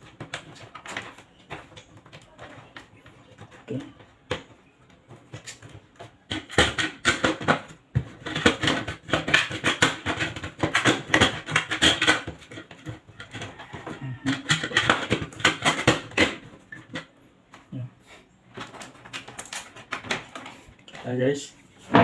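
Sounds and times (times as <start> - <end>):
tools and wires clicking and rattling: 0.0 - 17.1, 18.5 - 21.2.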